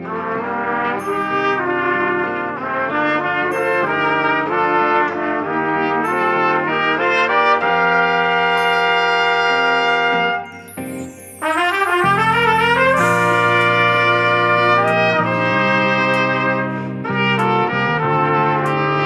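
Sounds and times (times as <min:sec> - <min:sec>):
trumpets playing in harmony: 0:00.0 - 0:19.0.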